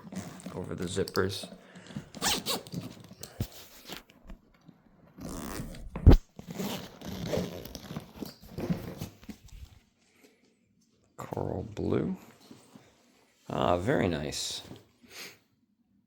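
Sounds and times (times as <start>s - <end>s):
suitcase zipper opening: 0.0s - 0.8s, 2.1s - 3.2s, 5.2s - 9.2s.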